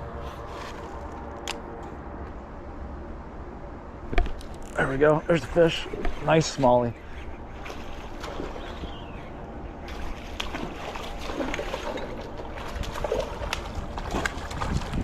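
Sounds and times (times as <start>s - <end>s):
water sloshing and splashing: 4.2s - 15.0s.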